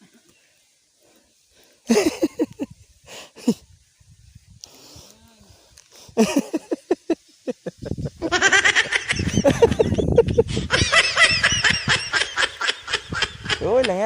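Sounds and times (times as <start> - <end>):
people laughing hard: 1.9 - 2.7, 6.2 - 14.0.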